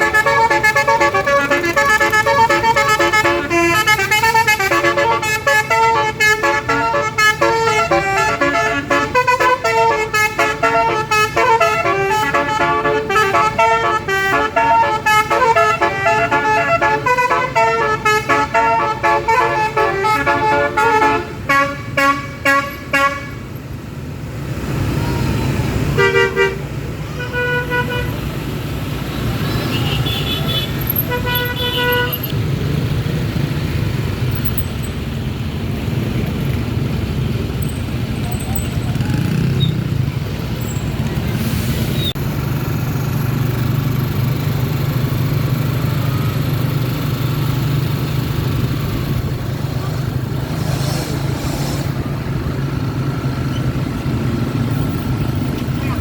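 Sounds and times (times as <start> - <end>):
bus multi-tone horn melody: 0.0 - 23.6, 24.9 - 28.4, 29.6 - 32.4, 45.4 - 56.0
engine and road noise: 0.0 - 56.0
short horn toots: 49.7 - 52.1.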